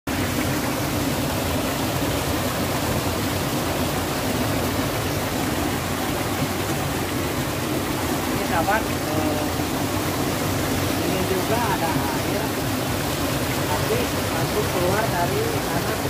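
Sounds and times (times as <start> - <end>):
water rushing: 0.1 - 16.0.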